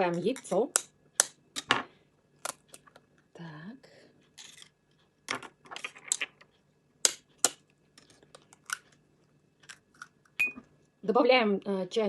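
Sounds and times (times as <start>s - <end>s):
eggs being cracked: 4.4s - 9.0s, 9.6s - 10.5s.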